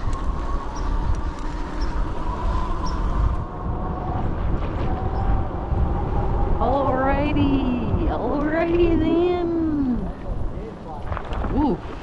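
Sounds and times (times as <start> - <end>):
electric motor whine: 0.0 - 6.6
wind on microphone: 0.0 - 12.0.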